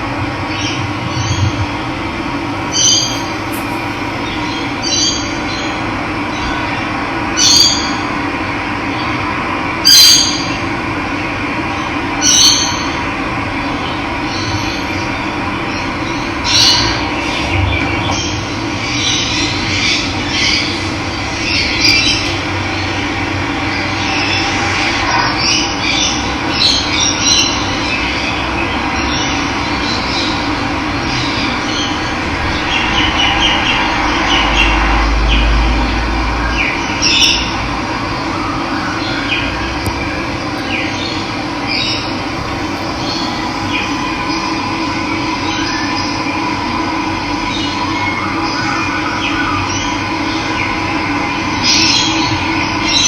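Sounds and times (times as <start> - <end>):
birds chirping and calling: 2.6 - 5.7, 40.6 - 44.6.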